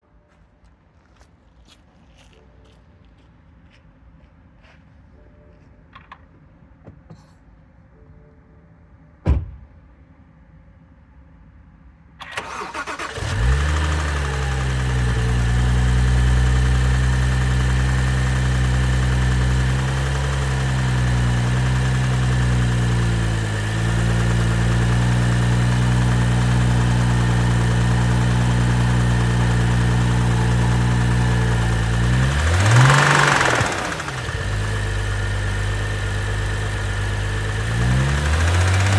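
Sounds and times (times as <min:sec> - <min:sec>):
starter cranking engine: 0:12.2 - 0:15.7, 0:31.6 - 0:35.8, 0:36.4 - 0:38.9
car engine idling: 0:12.6 - 0:38.9.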